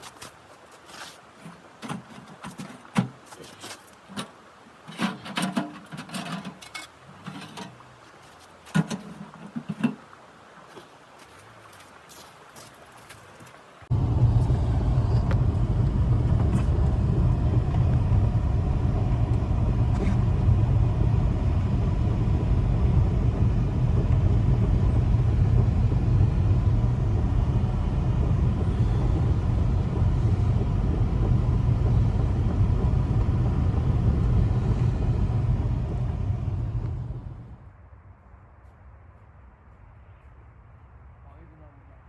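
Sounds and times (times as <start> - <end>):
blizzard wind blowing hard: 13.8 - 38.5.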